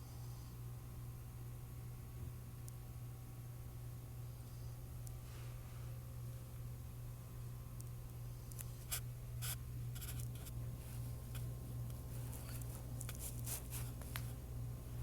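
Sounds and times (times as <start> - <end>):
steady low hum: 0.0 - 15.0
light scrapes and clicks: 8.6 - 10.6.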